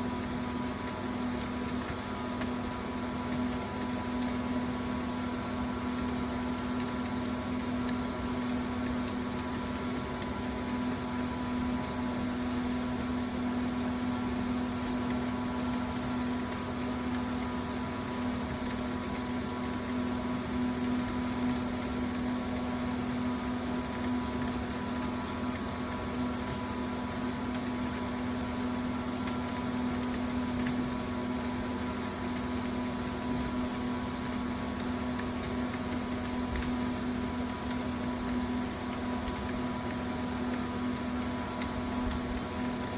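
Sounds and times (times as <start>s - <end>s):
steady mechanical hum: 0.0s - 42.9s.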